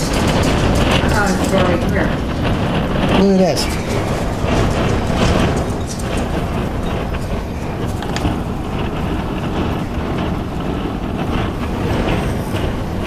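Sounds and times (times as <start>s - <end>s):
strong wind buffeting microphone: 0.0s - 13.0s.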